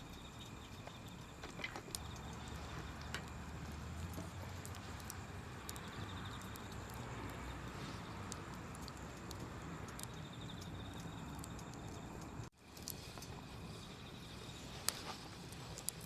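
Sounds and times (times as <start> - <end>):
campfire crackling: 0.0 - 16.0
faint insect trill: 0.0 - 16.0.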